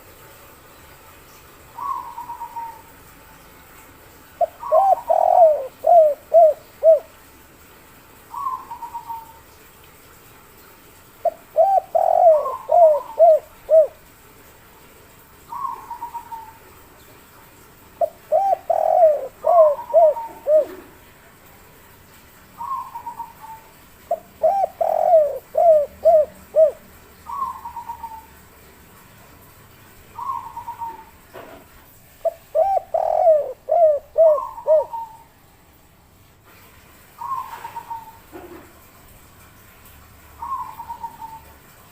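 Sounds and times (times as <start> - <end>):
dove cooing: 1.8 - 2.9, 4.4 - 7.2, 8.3 - 9.4, 11.2 - 14.0, 15.5 - 16.6, 18.0 - 21.1, 22.6 - 28.3, 30.2 - 31.2, 32.2 - 35.3, 37.2 - 38.7, 40.4 - 41.5.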